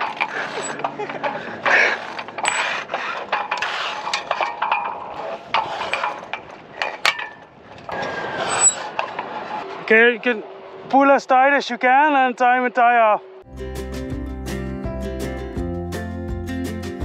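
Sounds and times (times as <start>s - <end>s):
short rasps: 0.0s - 4.4s.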